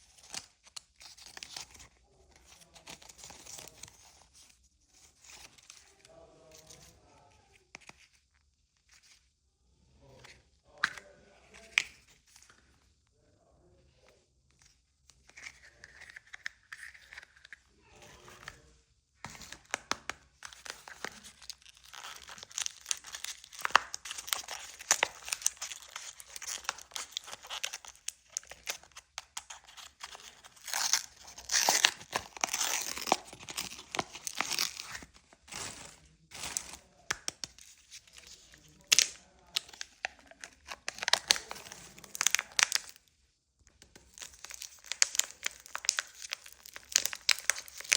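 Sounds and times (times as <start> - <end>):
plastic wrapper crinkling: 19.3 - 43.1, 43.7 - 47.9.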